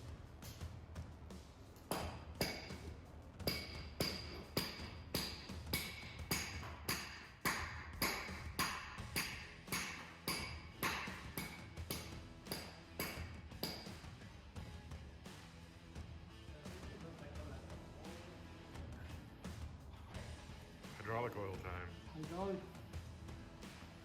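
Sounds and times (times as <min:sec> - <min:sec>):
music with pinging percussive beat: 0:01.8 - 0:15.0.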